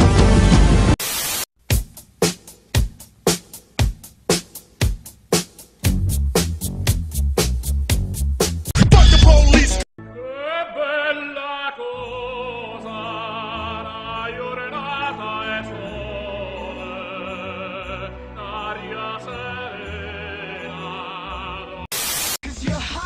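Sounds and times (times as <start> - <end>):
operatic singing: 8.8 - 23.0.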